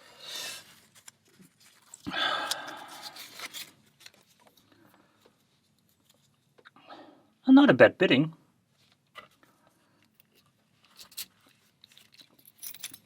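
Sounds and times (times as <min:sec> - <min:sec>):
person exhaling hard: 0:02.1 - 0:03.2.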